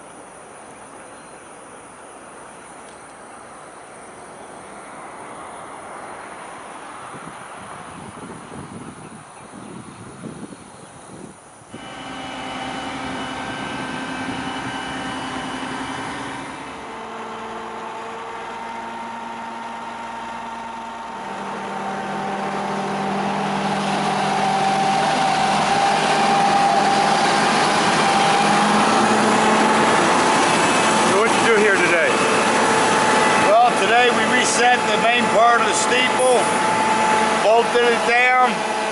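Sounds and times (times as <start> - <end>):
motor running steadily: 11.7 - 38.9.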